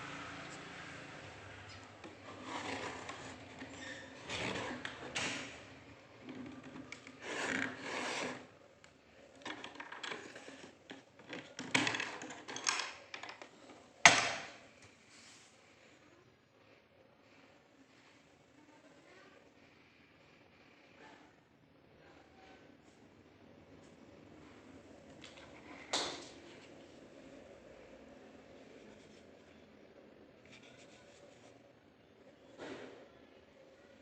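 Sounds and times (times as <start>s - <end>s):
rubbing and scraping of case: 2.0s - 5.5s, 6.2s - 8.6s.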